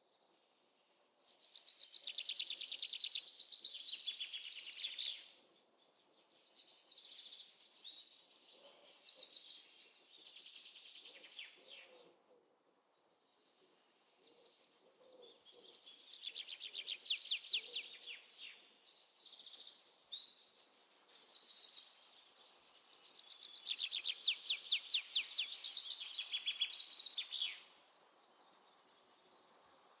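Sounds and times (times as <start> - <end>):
birds calling with fast trills: 20.4 - 30.0
high insect drone: 26.7 - 30.0.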